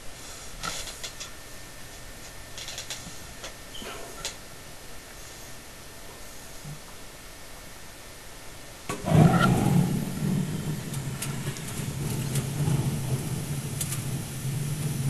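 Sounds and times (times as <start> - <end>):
gas burner burning with low rush: 0.0 - 15.0
gas burner lighting with a whoosh: 8.8 - 15.0.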